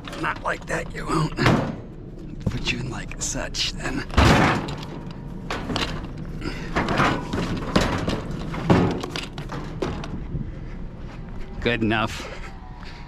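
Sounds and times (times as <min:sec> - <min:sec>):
junk knocking into scrap trailer: 0:04.2 - 0:10.2.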